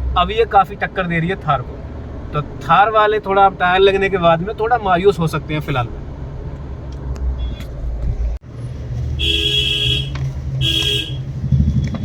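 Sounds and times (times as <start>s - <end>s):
car rumbling on road: 0.0s - 12.0s
car horn: 7.4s - 7.7s, 9.2s - 11.3s.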